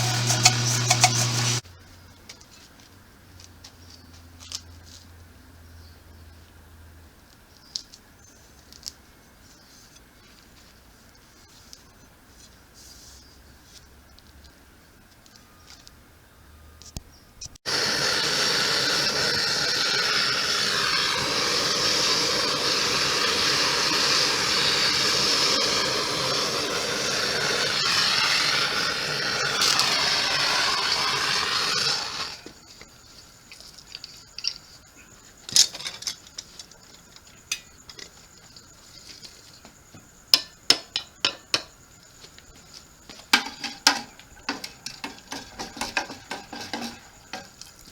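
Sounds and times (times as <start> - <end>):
motor running: 0.0 - 1.6.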